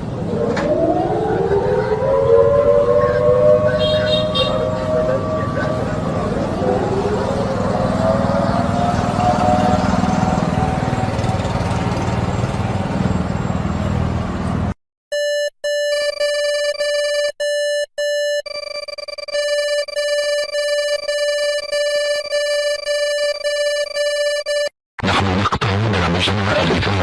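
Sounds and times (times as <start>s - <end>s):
siren-like wail: 0.0s - 13.6s
harsh buzzer-like alert beeps: 15.1s - 24.7s
higher alert tones: 15.1s - 24.7s.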